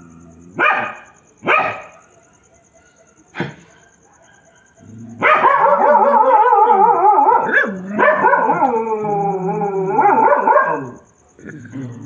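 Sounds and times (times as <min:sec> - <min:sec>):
dogs barking: 0:00.5 - 0:11.0
dogs howling: 0:03.7 - 0:11.0.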